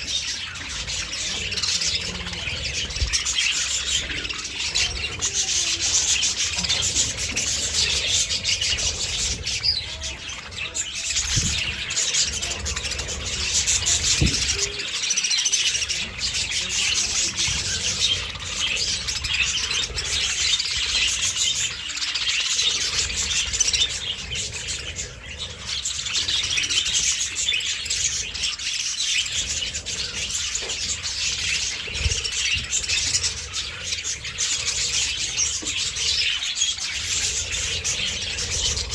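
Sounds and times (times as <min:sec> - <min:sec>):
budgerigars chattering: 0:00.0 - 0:38.9.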